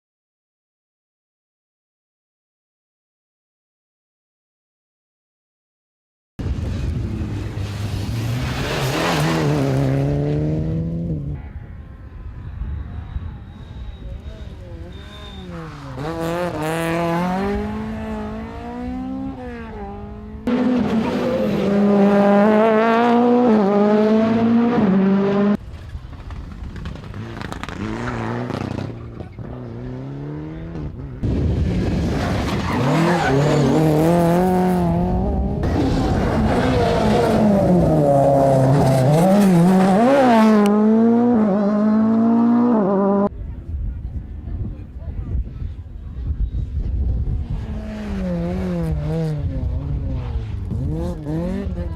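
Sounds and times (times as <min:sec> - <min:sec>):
rally car engines revving: 0:06.6 - 0:25.6, 0:26.2 - 0:43.3, 0:46.7 - 0:51.9.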